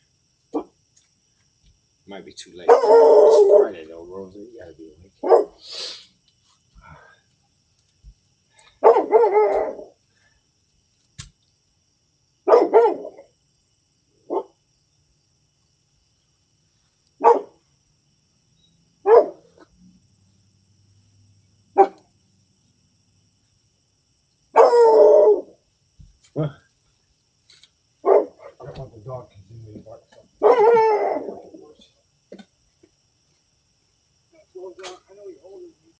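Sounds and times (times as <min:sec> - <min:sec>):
dog barking: 0:00.5 - 0:00.7, 0:02.6 - 0:03.8, 0:05.2 - 0:05.6, 0:08.8 - 0:09.9, 0:12.4 - 0:13.3, 0:14.3 - 0:14.6, 0:17.2 - 0:17.6, 0:19.0 - 0:19.6, 0:21.8 - 0:22.1, 0:24.5 - 0:25.5, 0:28.0 - 0:28.9, 0:30.4 - 0:31.6.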